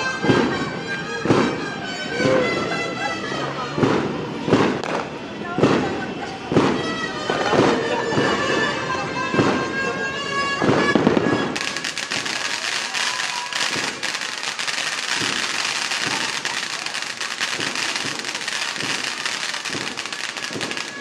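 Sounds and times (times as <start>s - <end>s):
fireworks crackling: 0.0s - 21.0s
heavy bangs: 10.6s - 21.0s.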